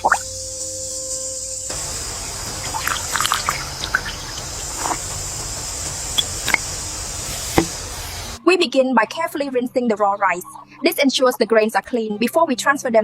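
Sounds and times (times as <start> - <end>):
water drips and splashes: 0.0 - 0.3, 1.7 - 7.9
steady rain hiss: 1.5 - 8.4.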